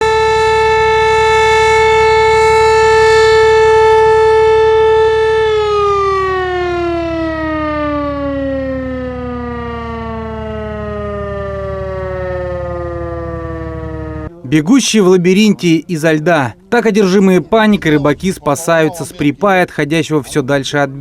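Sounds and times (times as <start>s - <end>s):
siren winding down: 0.0s - 14.5s.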